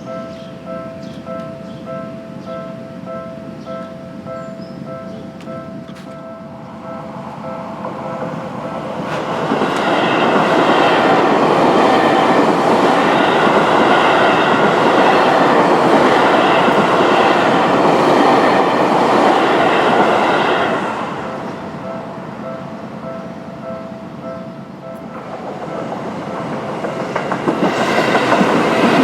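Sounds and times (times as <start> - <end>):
crossing warning bell: 0.0 - 29.0
train wheels on rails: 5.4 - 23.2, 24.8 - 29.0.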